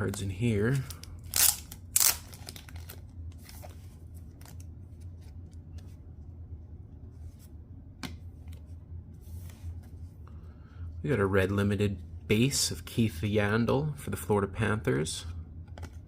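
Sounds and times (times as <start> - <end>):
card package tearing: 0.7 - 3.0.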